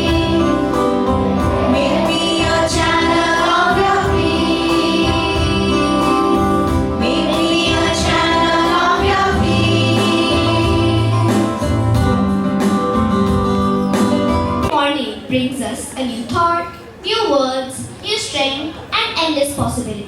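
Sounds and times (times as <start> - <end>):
voices singing held notes: 0.0 - 12.4.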